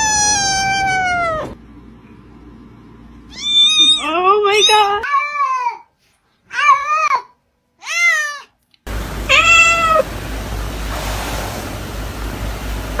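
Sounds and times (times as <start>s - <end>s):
cat meowing: 0.0s - 1.6s, 9.3s - 10.0s
steady hum and hiss: 8.9s - 13.0s.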